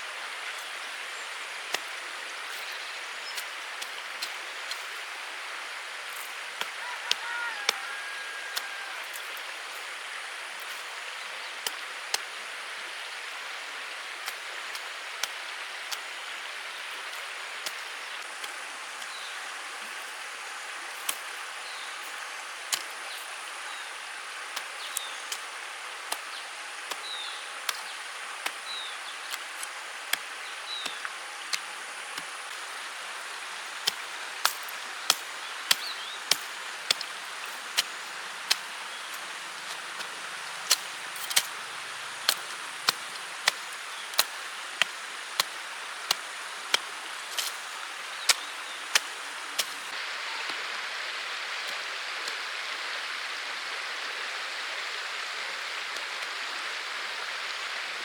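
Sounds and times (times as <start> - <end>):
rain hiss: 0.0 - 58.0
sharp ticks and taps: 1.7 - 5.2, 11.6 - 12.4, 14.2 - 16.2, 24.5 - 49.9.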